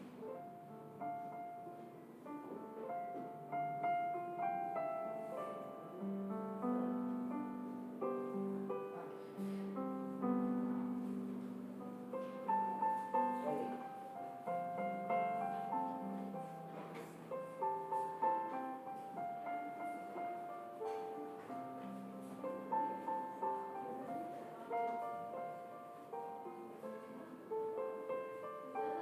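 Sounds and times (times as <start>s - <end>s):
soft solo piano: 0.0s - 29.0s.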